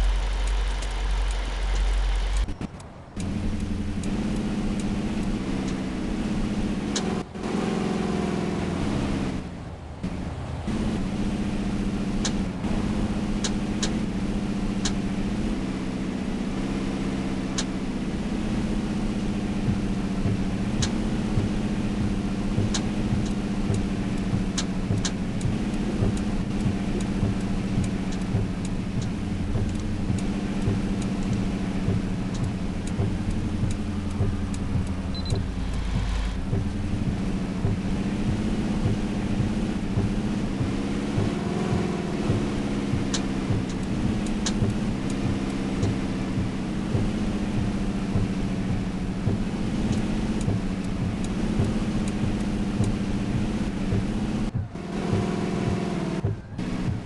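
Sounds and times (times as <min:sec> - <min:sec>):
sharp ticks: 0:00.0 - 0:05.9, 0:12.2 - 0:12.4, 0:14.8 - 0:15.0, 0:19.6 - 0:57.0
truck engine running: 0:00.0 - 0:57.0.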